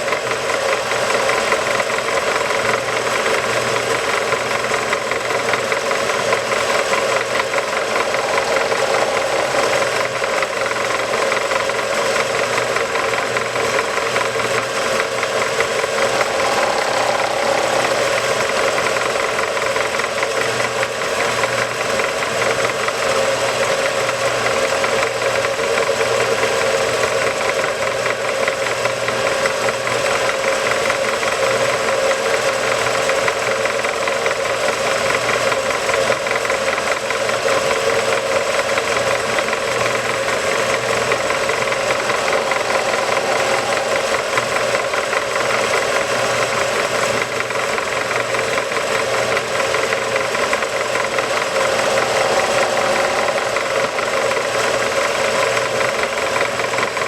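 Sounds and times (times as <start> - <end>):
power tool running: 6.5 - 11.7, 49.6 - 55.9.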